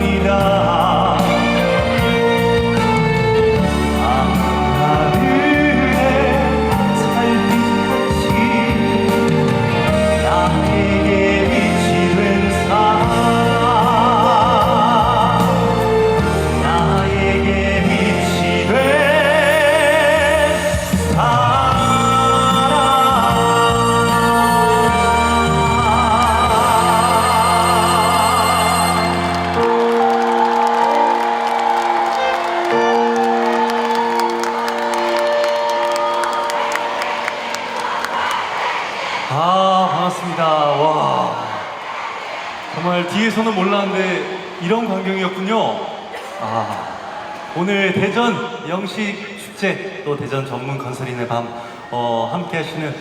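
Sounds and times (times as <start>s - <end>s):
person singing with vibrato: 3.6s - 38.6s
amplified accompaniment: 24.4s - 38.8s
live band music: 25.1s - 38.3s.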